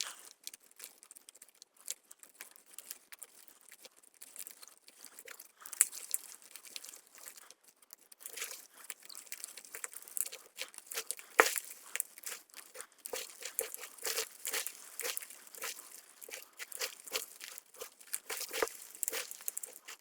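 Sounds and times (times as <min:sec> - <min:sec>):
chalk block crunching: 0:08.3 - 0:20.0.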